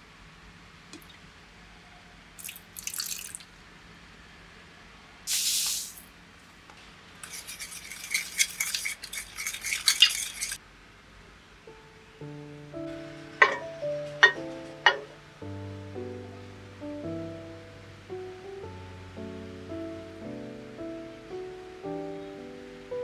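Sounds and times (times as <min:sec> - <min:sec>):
short hiss: 0:05.3 - 0:06.1.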